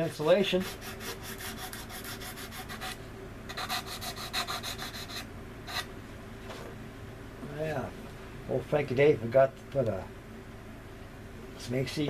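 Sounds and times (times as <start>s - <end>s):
hand sanding strokes: 0.0s - 5.9s.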